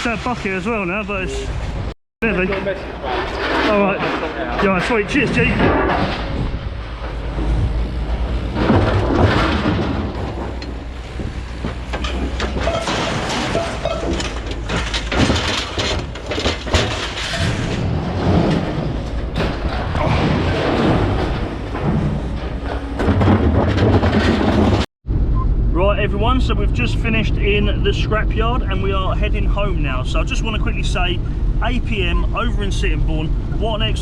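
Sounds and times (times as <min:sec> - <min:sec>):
low engine rumble: 0:00.2 - 0:34.0
scrap metal clanking and thudding: 0:02.3 - 0:24.9.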